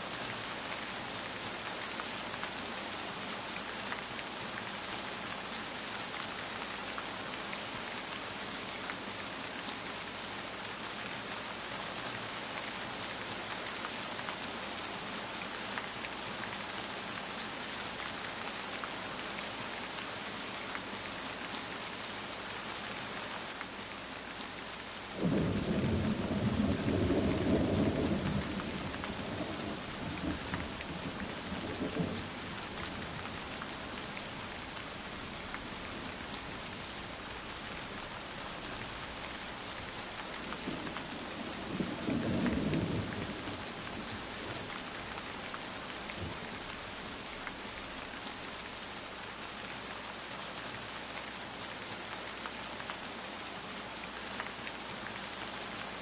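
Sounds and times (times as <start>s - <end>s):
steady rain falling: 0.0s - 56.0s
low rumble of thunder: 25.2s - 33.0s, 40.5s - 44.1s.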